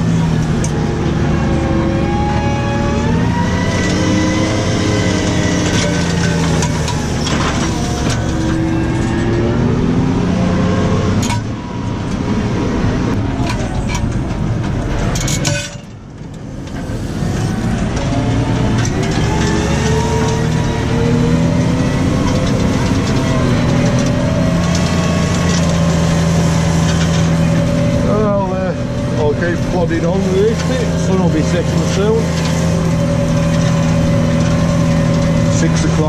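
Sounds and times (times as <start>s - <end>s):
tractor engine under load: 0.0s - 36.0s
clicks or clanks: 11.2s - 11.5s, 13.1s - 17.0s.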